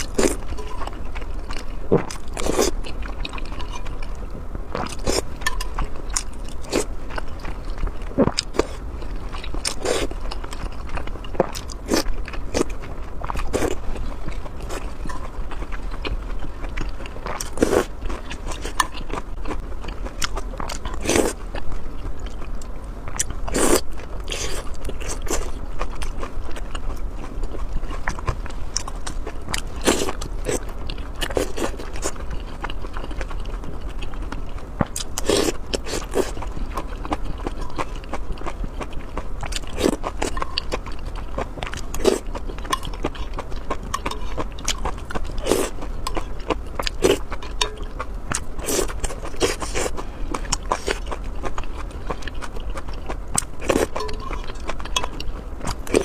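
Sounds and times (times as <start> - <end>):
person biting and chewing food: 23.1 - 56.0.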